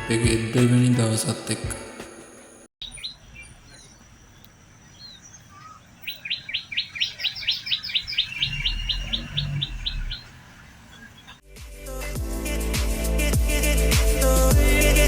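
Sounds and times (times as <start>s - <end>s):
bird chirping rapidly: 2.8s - 11.4s
scattered bird calls: 2.8s - 11.4s.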